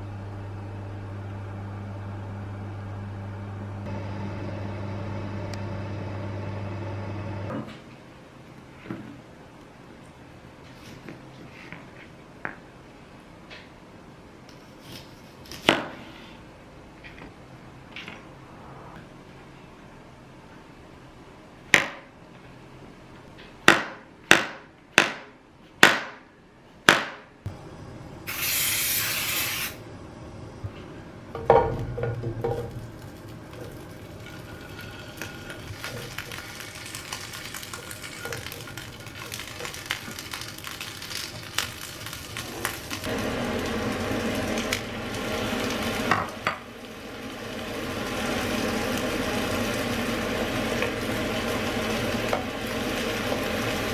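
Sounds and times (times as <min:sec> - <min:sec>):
short hiss: 0:28.3 - 0:29.8
vegetables sizzling in a pan: 0:32.0 - 0:53.9.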